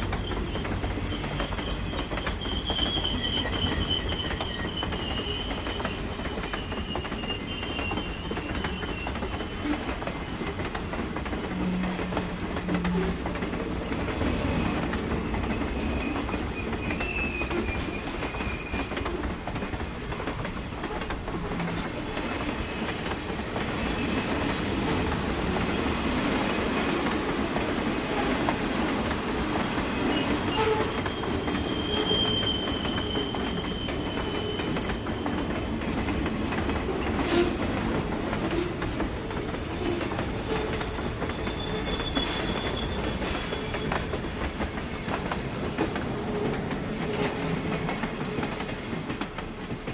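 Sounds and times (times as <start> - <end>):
train wheels rumbling and clattering: 0.0 - 49.9
high wheel squeal: 0.1 - 9.9, 14.4 - 20.2, 29.9 - 35.8, 40.0 - 44.4.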